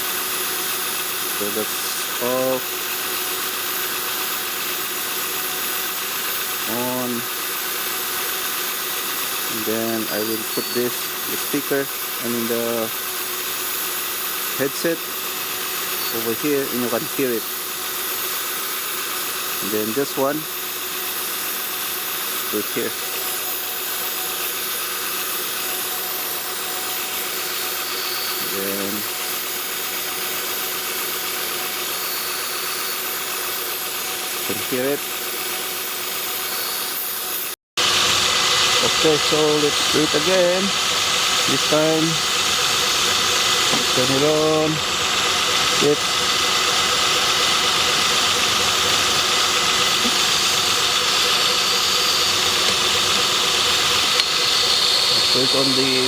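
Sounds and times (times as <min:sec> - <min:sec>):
power steering pump hiss and buzz: 0:00.0 - 0:56.0
car engine idling: 0:42.2 - 0:55.2.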